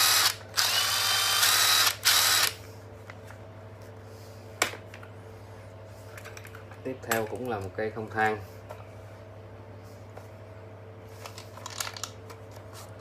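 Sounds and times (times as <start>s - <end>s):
cordless power tool whirring: 0.0s - 2.6s.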